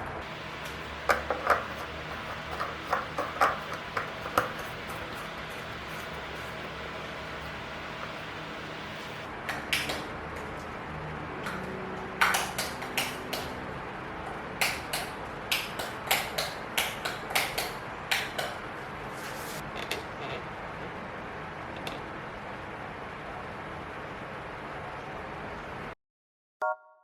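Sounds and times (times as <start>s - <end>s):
small hard items clicking and knocking: 0.6s - 6.5s.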